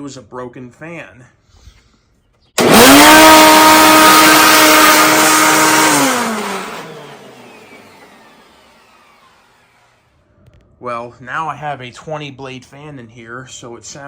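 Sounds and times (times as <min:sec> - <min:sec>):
vacuum cleaner motor howling: 0:02.6 - 0:10.1.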